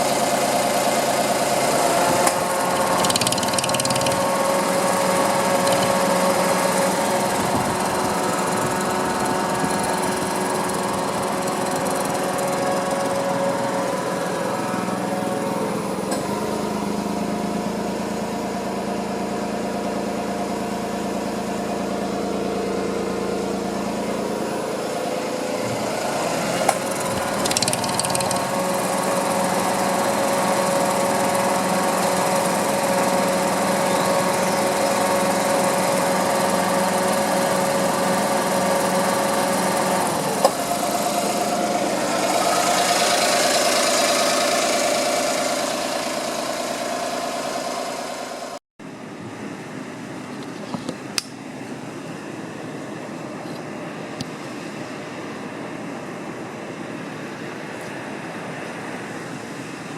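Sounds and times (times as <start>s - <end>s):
car engine running: 1.6s - 13.8s
sharp clicks: 2.3s - 4.3s, 5.5s - 6.1s, 26.7s - 28.5s.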